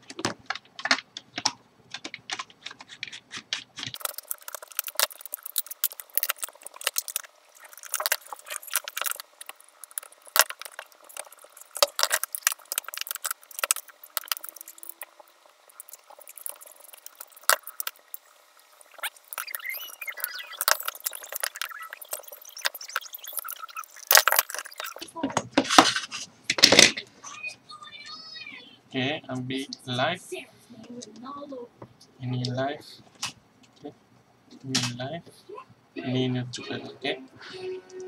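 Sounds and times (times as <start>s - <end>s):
small parts clicking and clinking: 3.8s - 25.0s.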